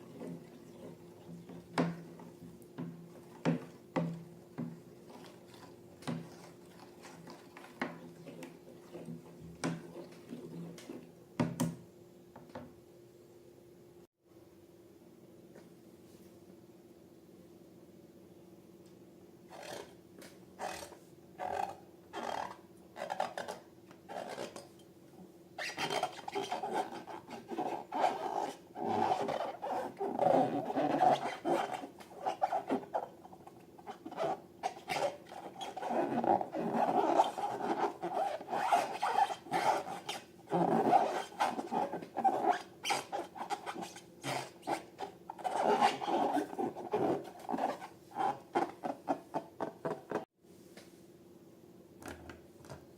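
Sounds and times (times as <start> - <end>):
rubbing and scraping of balloons: 25.6 - 50.3.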